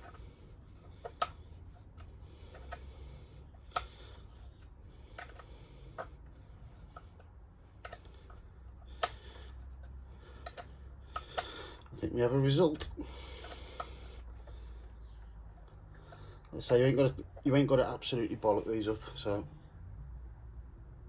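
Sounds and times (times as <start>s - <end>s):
faint rasping: 0.0s - 19.8s
sharp metallic clicks: 0.9s - 14.4s.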